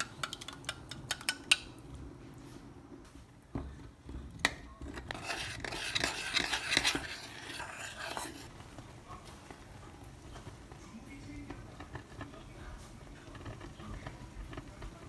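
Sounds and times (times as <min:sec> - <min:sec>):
utensils scraping against dishes: 0:04.4 - 0:09.6.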